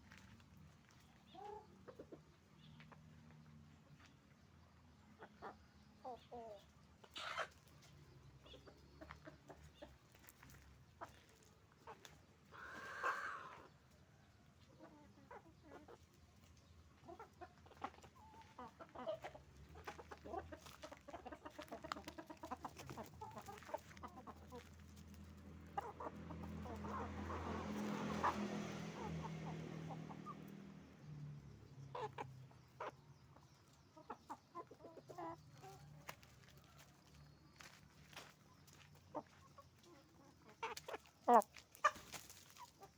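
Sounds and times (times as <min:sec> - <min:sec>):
hens clucking: 0:00.0 - 0:42.9
hen drawn-out call: 0:12.5 - 0:13.7.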